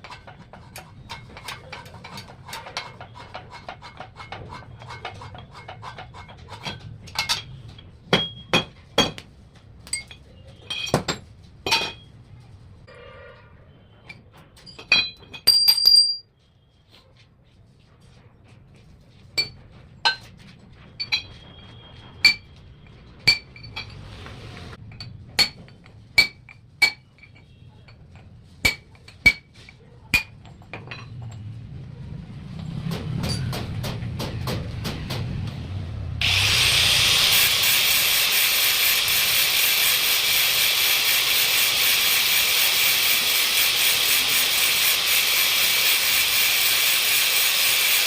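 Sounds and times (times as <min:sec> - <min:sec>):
metallic clinks of steel parts: 0:06.6 - 0:08.6, 0:09.9 - 0:11.1, 0:14.1 - 0:16.3.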